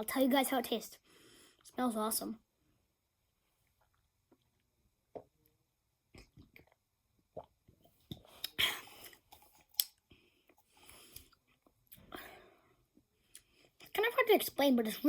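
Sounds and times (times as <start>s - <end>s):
person sipping and swallowing: 3.6s - 5.5s, 6.1s - 12.3s
mouth clicks and smacks: 6.1s - 10.0s.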